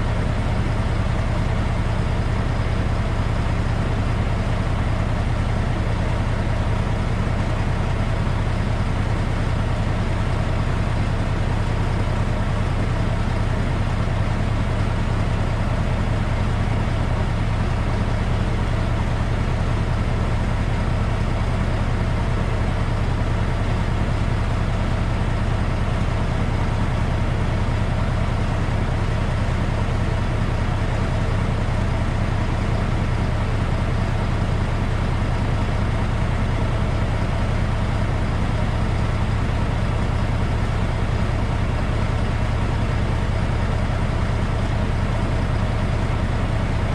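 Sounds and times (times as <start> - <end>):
truck engine droning: 0.0 - 46.9.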